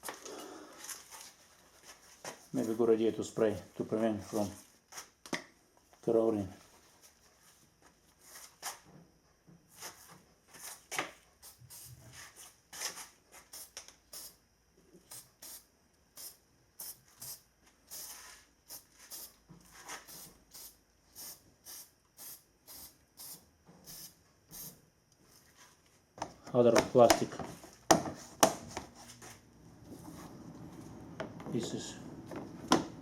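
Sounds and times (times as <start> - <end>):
aerosol spray hissing: 13.5 - 14.4, 15.1 - 19.4, 20.1 - 24.8.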